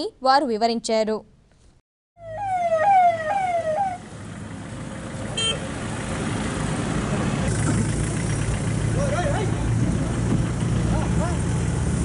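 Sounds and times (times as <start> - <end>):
vehicle siren: 2.2 - 4.2
vehicle engine and road noise: 2.2 - 12.0.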